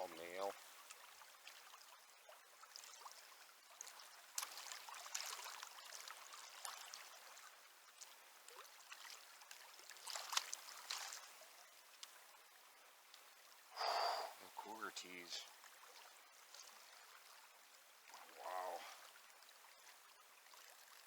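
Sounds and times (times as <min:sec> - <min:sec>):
river water trickling and splashing: 0:00.0 - 0:21.0.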